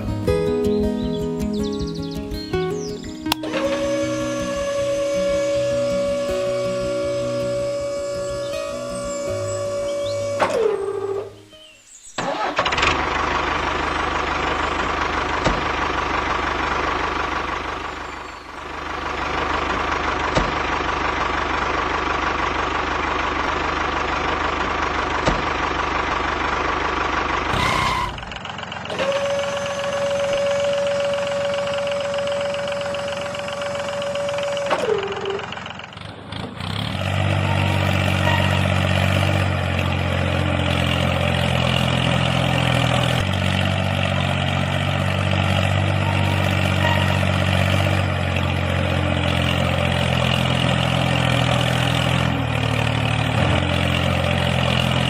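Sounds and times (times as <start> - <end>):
gearbox grinding: 3.3 - 11.4
low engine-like hum: 3.3 - 11.6, 12.2 - 36.5
small motor whine: 3.4 - 11.3, 28.9 - 35.4.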